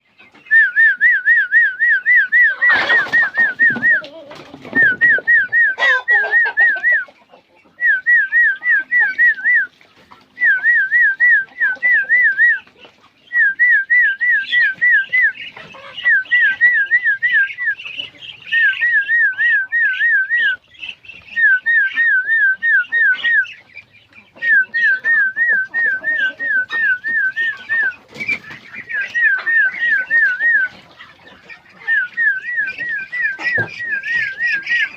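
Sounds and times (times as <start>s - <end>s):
high whistled bird-like call: 31.8s - 34.9s.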